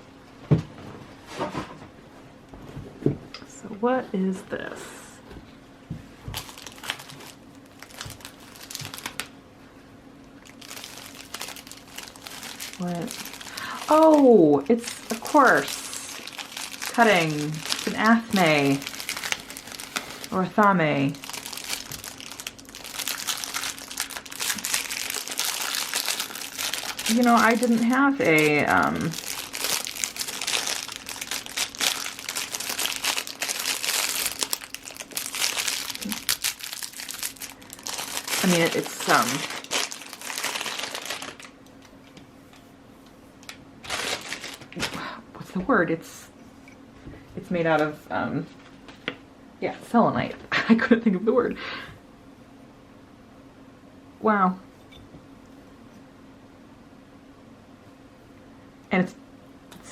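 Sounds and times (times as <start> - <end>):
packaging crinkling and rustling: 6.2 - 9.4, 10.3 - 42.0, 43.4 - 45.2.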